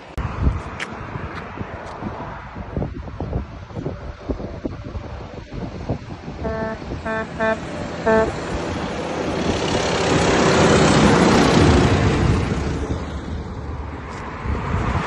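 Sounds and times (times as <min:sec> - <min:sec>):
truck passing by: 0:03.8 - 0:15.0
truck horn honking: 0:06.4 - 0:08.7.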